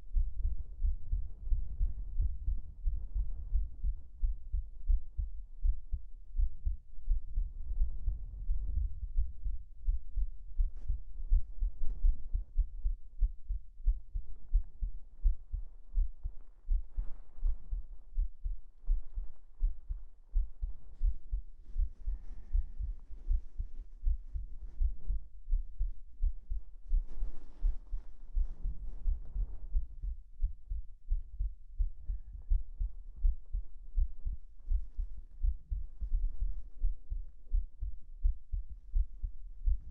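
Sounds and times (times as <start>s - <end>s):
heartbeat thumps: 0.0s - 39.9s
fabric rustling: 26.8s - 29.9s.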